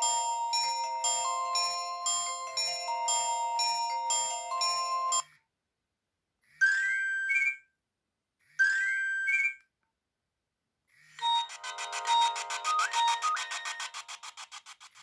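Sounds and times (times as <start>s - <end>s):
busier ringtone tune: 0.0s - 5.3s, 11.2s - 14.6s
electronic phone ringtone: 0.0s - 5.4s, 11.2s - 15.0s.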